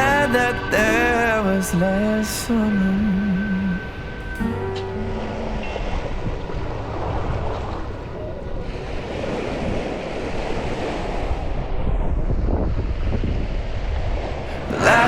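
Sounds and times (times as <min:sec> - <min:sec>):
surf washing on beach: 0:00.0 - 0:15.0
wind buffeting microphone: 0:00.0 - 0:15.0.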